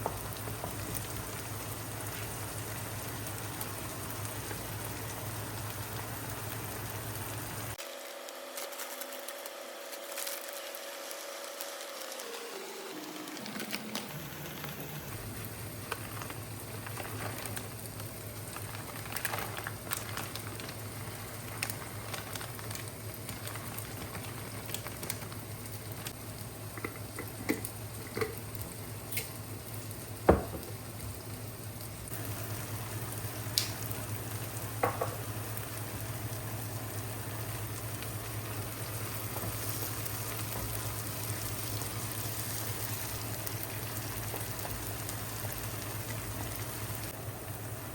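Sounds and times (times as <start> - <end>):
sizzling hiss: 0.0 - 47.9.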